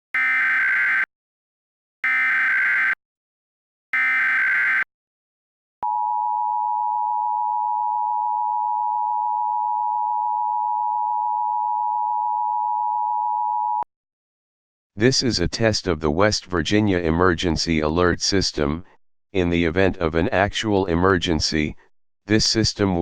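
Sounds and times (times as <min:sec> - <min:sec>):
buzzy digital data bursts: 0:00.2 - 0:01.1, 0:02.0 - 0:03.0, 0:04.0 - 0:04.8
two-tone attention signal: 0:00.2 - 0:01.1, 0:02.0 - 0:03.0, 0:04.0 - 0:04.9.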